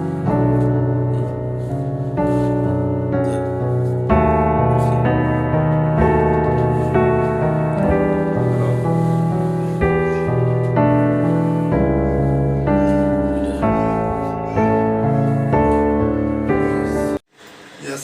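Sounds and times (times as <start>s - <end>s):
piano chords: 0.0s - 17.3s.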